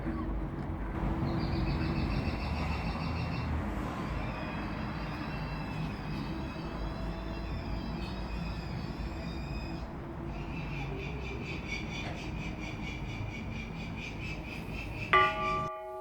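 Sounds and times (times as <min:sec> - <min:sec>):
low city rumble: 0:00.0 - 0:15.8
high-pitched pulsing squeal: 0:01.1 - 0:11.0.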